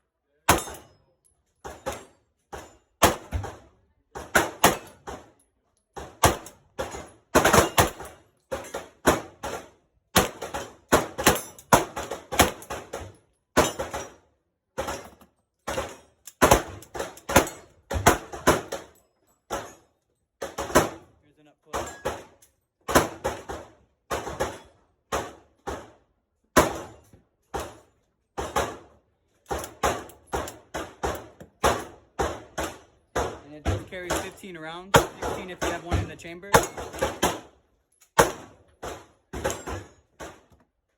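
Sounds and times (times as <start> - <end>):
pistol shots echoing: 4.2 - 5.2, 29.6 - 37.6, 38.2 - 40.3.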